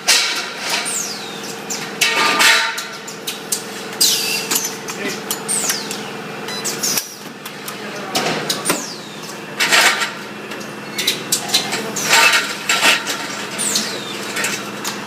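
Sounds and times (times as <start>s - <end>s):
steady machine hum: 0.0s - 15.0s
metallic clanks and knocks: 9.6s - 15.0s.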